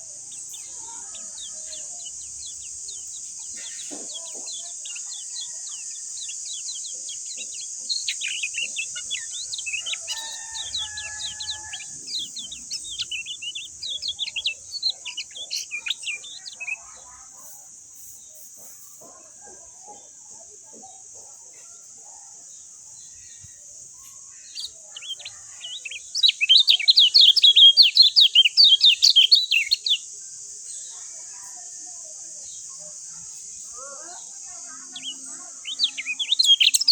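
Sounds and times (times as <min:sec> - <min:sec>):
bird twittering chirps: 0:00.0 - 0:21.0, 0:23.0 - 0:36.9.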